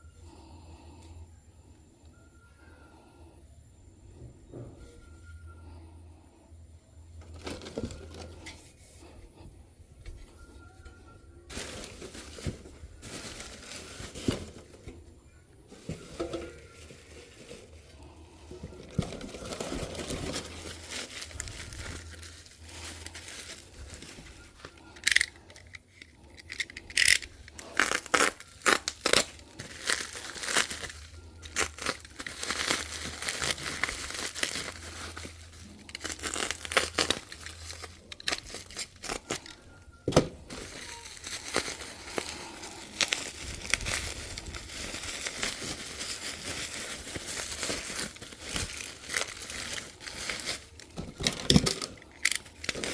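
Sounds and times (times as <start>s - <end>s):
packaging being torn and crumpled: 15.8s - 39.7s, 40.4s - 52.9s.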